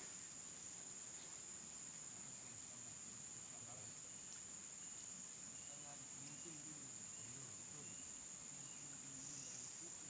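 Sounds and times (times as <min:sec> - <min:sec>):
insects chirping chorus: 0:00.0 - 0:10.0
faint distant voices: 0:02.1 - 0:04.1, 0:05.6 - 0:10.0.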